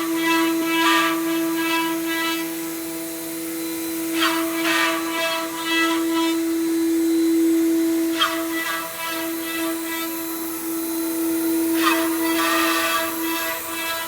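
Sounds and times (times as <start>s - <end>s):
router bit cutting wood: 0.0s - 14.0s
router spindle high whine: 0.0s - 14.0s.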